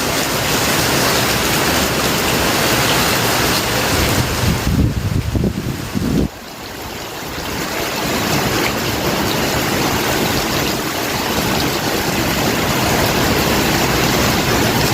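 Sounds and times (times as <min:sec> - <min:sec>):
heavy rain: 0:00.0 - 0:14.9.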